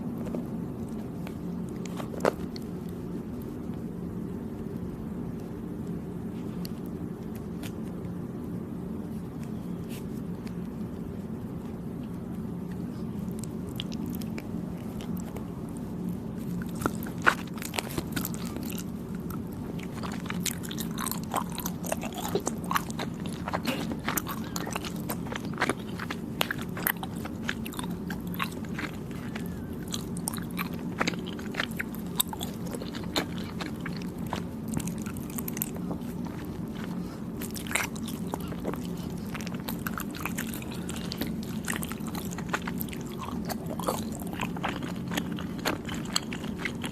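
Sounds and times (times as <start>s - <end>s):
chewing soft food: 0.0s - 46.9s
constant low hum: 0.0s - 46.9s
mouth clicks and bites: 12.0s - 46.9s.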